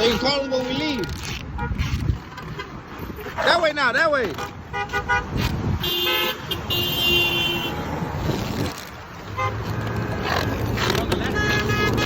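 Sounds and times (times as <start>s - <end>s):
road traffic noise: 0.0s - 12.0s
car horns honking: 4.3s - 7.9s, 9.3s - 12.0s.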